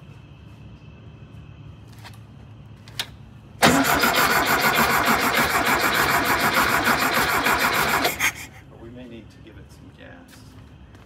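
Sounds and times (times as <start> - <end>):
engine starter cranking: 3.6 - 8.5.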